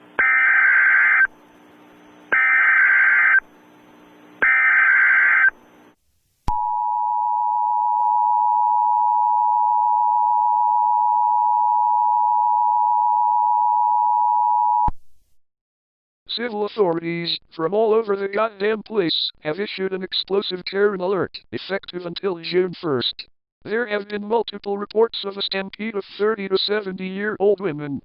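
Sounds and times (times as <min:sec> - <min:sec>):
modem-like data bursts: 0:02.3 - 0:03.4, 0:04.4 - 0:05.5.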